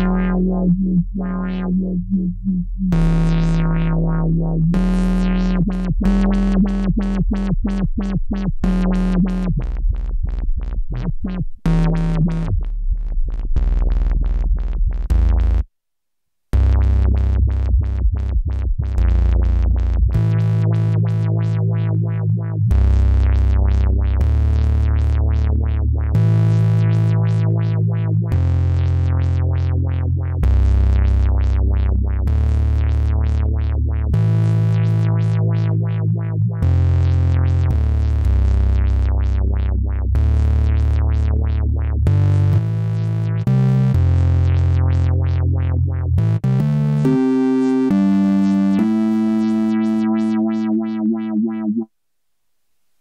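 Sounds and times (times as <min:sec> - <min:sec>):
fast repeated synth notes: 0:00.0 - 0:15.6, 0:46.2 - 0:51.9
deep synth bass notes: 0:00.0 - 0:15.7, 0:16.5 - 0:51.9.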